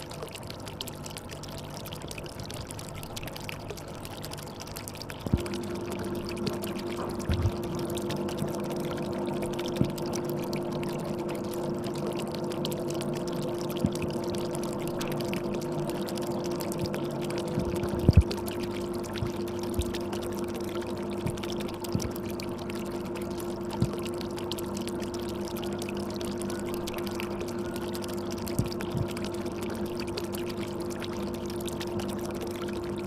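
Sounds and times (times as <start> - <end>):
pump humming: 0.0 - 33.0
water pouring and bubbling: 0.0 - 33.0
soft water knocks: 5.2 - 5.6, 6.4 - 7.8, 9.7 - 10.0, 13.8 - 14.1, 17.5 - 18.4, 19.1 - 20.0, 21.2 - 22.4, 23.7 - 24.1, 28.5 - 29.3.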